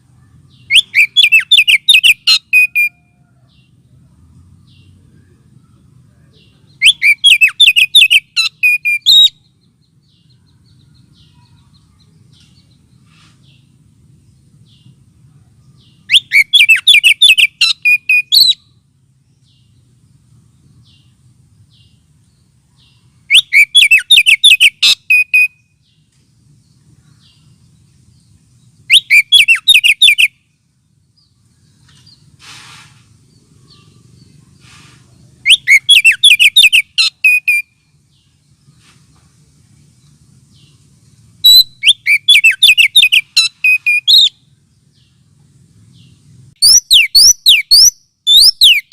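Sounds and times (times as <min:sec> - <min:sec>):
bird rapid chirping: 0:00.5 - 0:02.9, 0:06.7 - 0:11.3, 0:15.8 - 0:18.7, 0:23.3 - 0:25.6, 0:28.8 - 0:30.3, 0:33.6 - 0:37.7, 0:41.4 - 0:44.4, 0:45.9 - 0:48.9.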